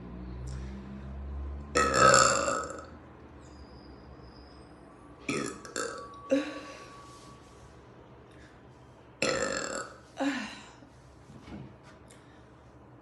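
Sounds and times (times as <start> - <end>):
woman burping loudly: 1.8 - 2.9, 5.3 - 6.6, 9.2 - 10.5.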